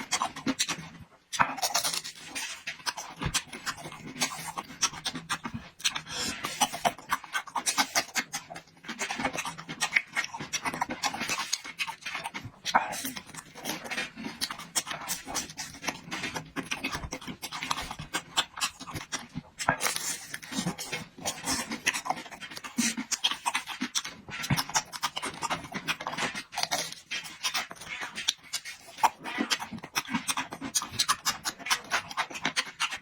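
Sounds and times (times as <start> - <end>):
person chewing and lip-smacking: 0.0 - 33.0.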